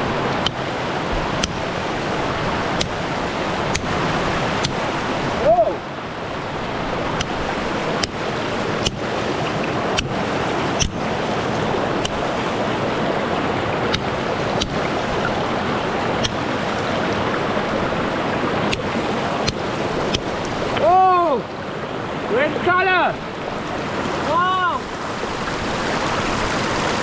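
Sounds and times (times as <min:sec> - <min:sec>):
river water rushing: 0:00.0 - 0:27.0
hammer and chisel tapping rock: 0:00.4 - 0:01.7, 0:02.8 - 0:03.1, 0:04.6 - 0:04.9, 0:08.0 - 0:10.2, 0:12.0 - 0:12.4, 0:13.9 - 0:14.8, 0:18.7 - 0:20.9.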